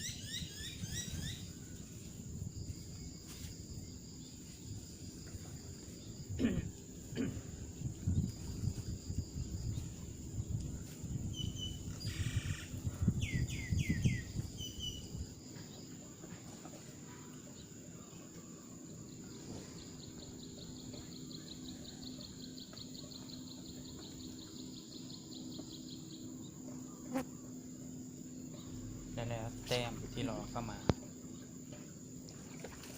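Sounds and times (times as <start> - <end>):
birds chirping: 0.0 - 2.1, 17.1 - 32.3
insects buzzing: 0.0 - 32.9
low rumbling noise: 28.3 - 31.5
rapid pulsed trill: 28.6 - 30.9.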